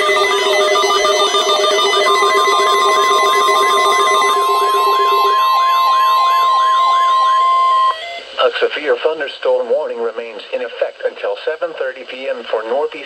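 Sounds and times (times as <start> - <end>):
low steady tone: 0.0 - 8.2
warbling electronic alert tone: 0.0 - 8.2
steady warning alarm tone: 0.0 - 8.4.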